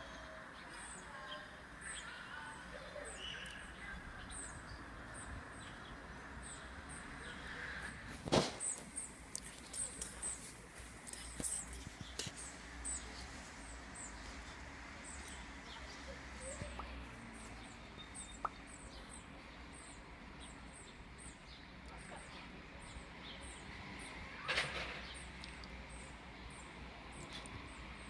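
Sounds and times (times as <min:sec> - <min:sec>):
low outdoor background: 0:00.0 - 0:28.0.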